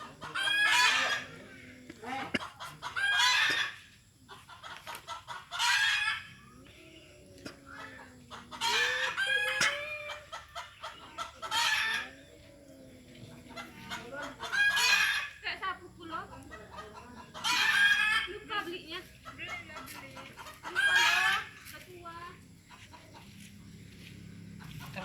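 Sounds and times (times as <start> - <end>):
cats yowling: 5.6 - 10.4, 11.4 - 14.0.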